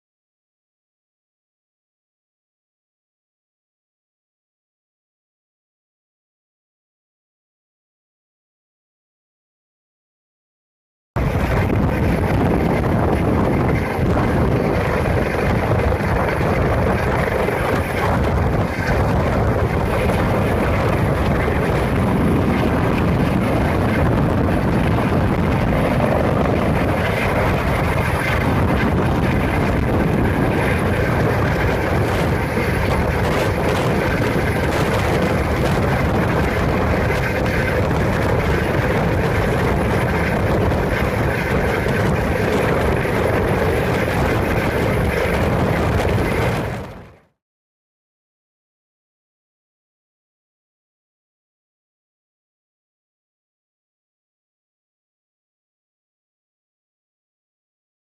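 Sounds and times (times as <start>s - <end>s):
helicopter rotor and engine: 11.2s - 47.3s.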